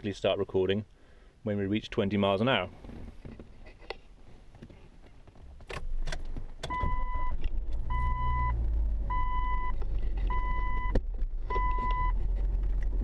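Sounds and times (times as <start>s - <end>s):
ignition clicks: 5.6s - 8.2s.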